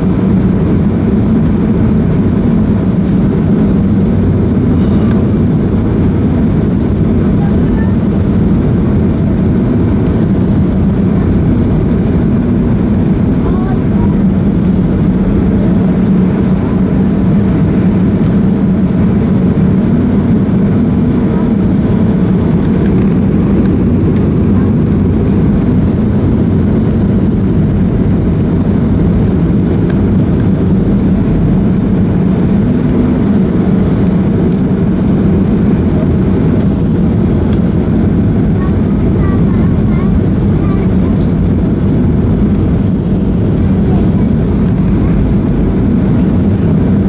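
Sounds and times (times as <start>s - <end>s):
jet engine cabin drone: 0.0s - 47.0s.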